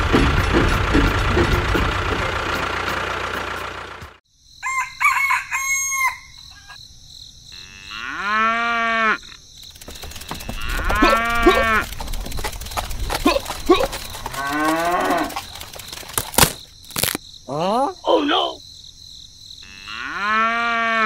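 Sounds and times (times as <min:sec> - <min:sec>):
steady machine noise: 0:00.0 - 0:04.2, 0:09.6 - 0:16.4
rooster crowing: 0:04.6 - 0:06.8.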